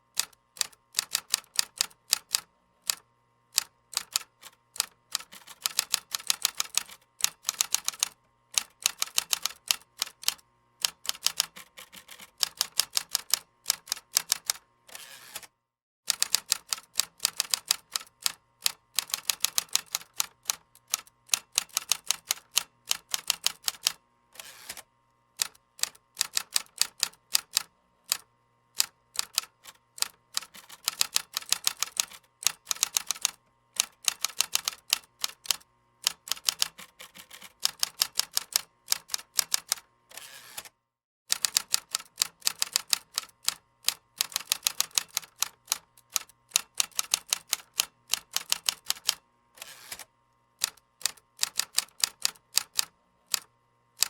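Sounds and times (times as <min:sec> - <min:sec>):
keyboard typing: 0:03.6 - 0:14.6, 0:16.1 - 0:24.0, 0:25.8 - 0:28.2, 0:28.8 - 0:39.8, 0:41.3 - 0:49.2, 0:50.6 - 0:53.5.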